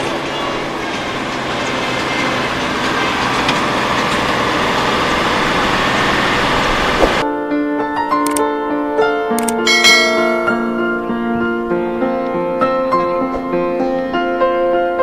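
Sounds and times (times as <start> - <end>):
heavy engine running: 0.0 - 7.2
keyboard music: 6.0 - 14.0.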